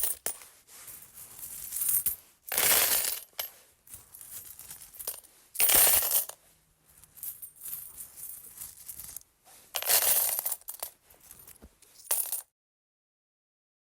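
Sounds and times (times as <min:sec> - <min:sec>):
metal coins clinking: 0:00.0 - 0:00.4, 0:01.0 - 0:06.4, 0:07.0 - 0:09.2, 0:09.8 - 0:12.4.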